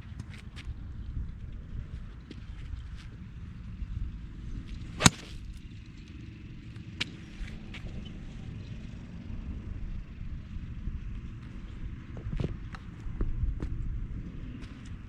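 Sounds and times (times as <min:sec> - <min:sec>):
steady low rumble: 0:00.0 - 0:06.0
golf iron striking ball: 0:04.8 - 0:05.6.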